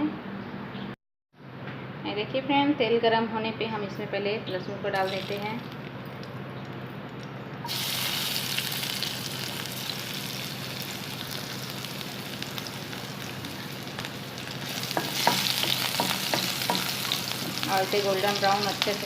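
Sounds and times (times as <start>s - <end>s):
garlic sizzling in hot oil: 5.0s - 5.9s, 7.6s - 19.0s.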